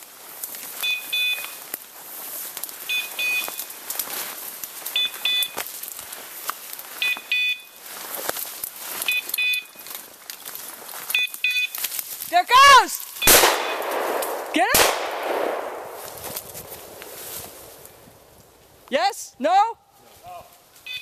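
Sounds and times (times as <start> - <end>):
footsteps through brush: 0.0 - 19.0, 19.9 - 21.0
beeper collar double beeps: 0.8 - 1.4, 2.9 - 3.6, 5.0 - 5.6, 7.0 - 7.7, 9.1 - 9.8.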